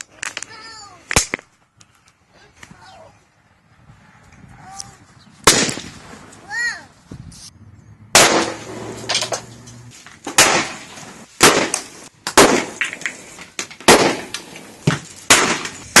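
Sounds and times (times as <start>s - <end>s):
loud bangs with echo: 5.4s - 6.0s, 8.1s - 9.3s, 10.3s - 13.1s, 13.8s - 16.0s.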